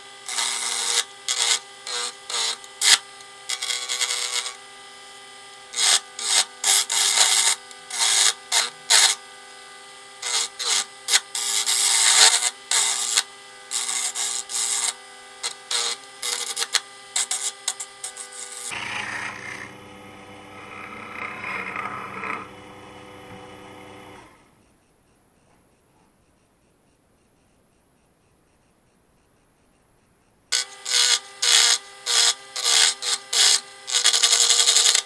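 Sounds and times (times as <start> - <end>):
lathe tool scraping wood: 0.0 - 4.7, 5.7 - 9.2, 10.2 - 24.4, 30.6 - 35.0
lathe motor whining: 10.2 - 24.5.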